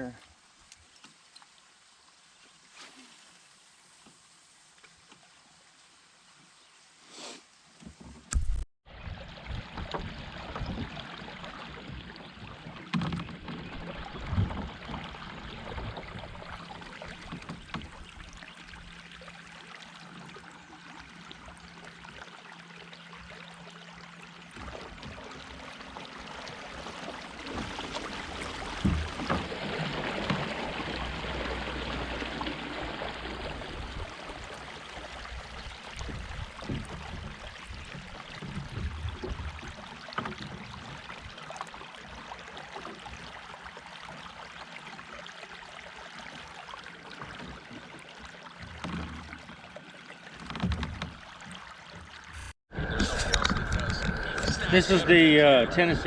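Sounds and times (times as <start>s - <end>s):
water rushing past: 2.7s - 4.7s, 24.6s - 37.3s, 52.2s - 56.0s
boat motor hum: 8.5s - 56.0s.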